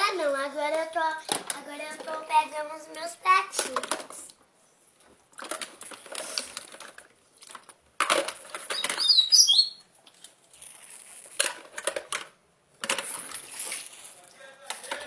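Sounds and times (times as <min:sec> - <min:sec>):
plastic toy dishes clattering: 0:03.5 - 0:04.2, 0:05.4 - 0:09.2, 0:11.3 - 0:15.0
high squeak: 0:08.7 - 0:09.8.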